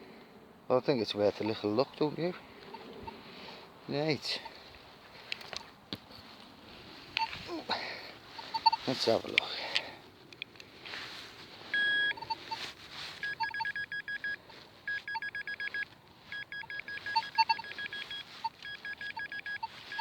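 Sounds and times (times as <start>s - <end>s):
metal detector beeping: 1.4s - 1.8s, 2.6s - 3.2s, 7.2s - 7.6s, 8.4s - 9.3s, 11.7s - 20.0s.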